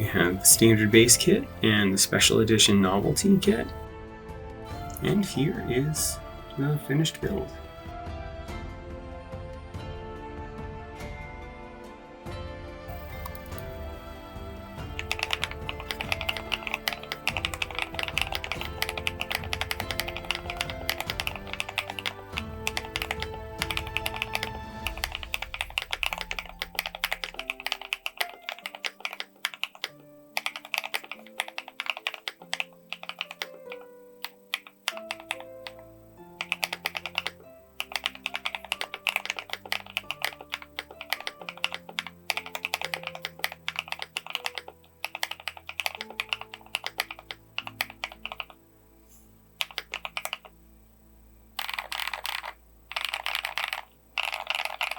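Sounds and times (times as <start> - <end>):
mechanical keyboard key clacks: 14.8 - 35.8, 36.4 - 48.6, 49.6 - 50.5, 51.6 - 54.9.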